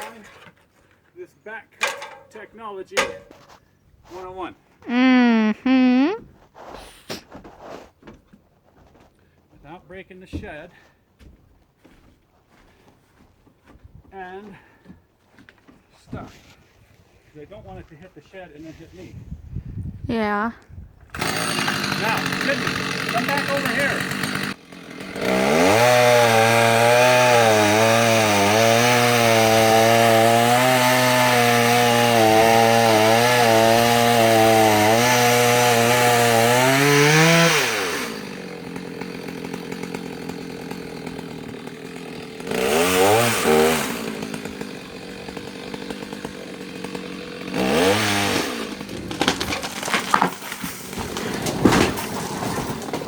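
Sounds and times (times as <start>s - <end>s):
chainsaw cutting wood: 3.0s - 3.6s, 21.1s - 53.0s
chainsaw idling and revving: 21.1s - 51.6s.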